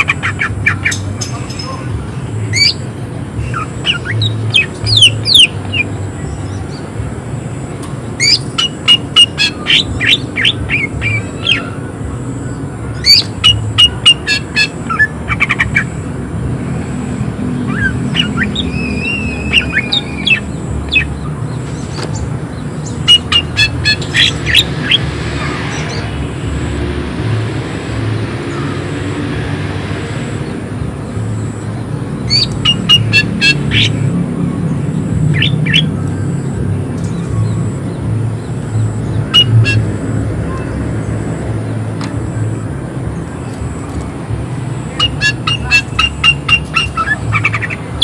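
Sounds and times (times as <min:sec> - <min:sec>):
bird singing sharp rapid calls: 0:00.0 - 0:06.9, 0:08.0 - 0:11.9, 0:12.5 - 0:16.0, 0:17.6 - 0:26.1, 0:31.6 - 0:34.1, 0:34.7 - 0:36.5, 0:37.1 - 0:41.8, 0:44.8 - 0:48.0.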